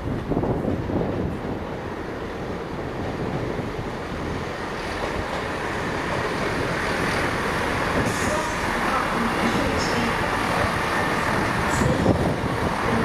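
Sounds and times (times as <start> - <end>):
train rumbling past: 0.0 - 13.0.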